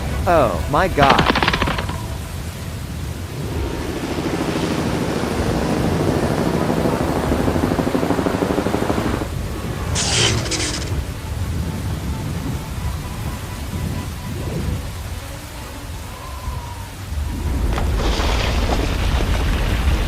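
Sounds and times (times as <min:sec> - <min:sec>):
rain: 0:00.0 - 0:20.0
thunder rumbling: 0:16.2 - 0:20.0
sharp thunder crackle: 0:17.2 - 0:20.0.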